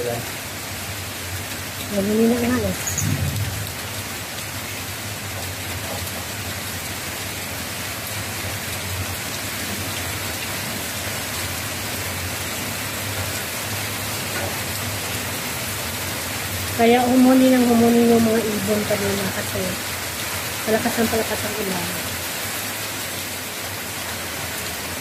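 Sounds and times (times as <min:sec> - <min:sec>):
heavy rain pouring: 0:00.0 - 0:25.0.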